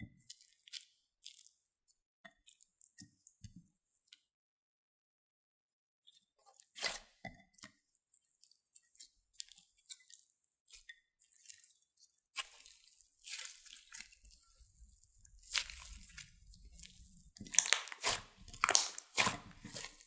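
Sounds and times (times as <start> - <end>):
slime squelching: 0.2 - 1.7, 6.6 - 20.0.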